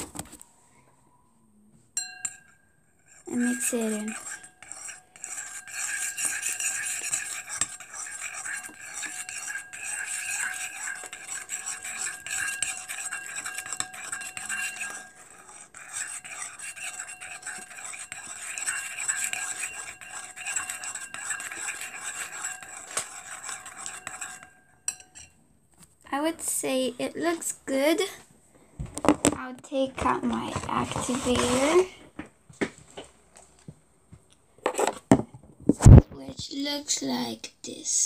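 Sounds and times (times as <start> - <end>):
spoon scraping and clinking bowl: 2.0 - 25.4, 30.0 - 31.9.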